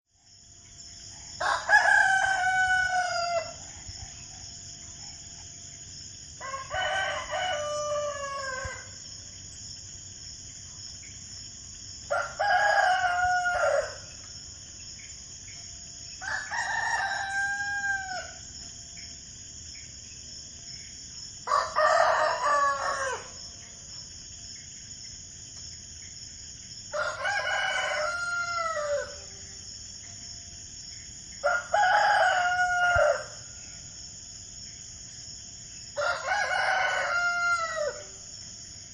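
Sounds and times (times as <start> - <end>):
high-pitched background hiss: 0.1 - 38.9
rooster crowing: 1.4 - 4.6, 6.4 - 9.1, 12.1 - 14.2, 16.2 - 18.5, 21.4 - 23.6, 26.9 - 29.4, 31.4 - 33.6, 36.0 - 38.3.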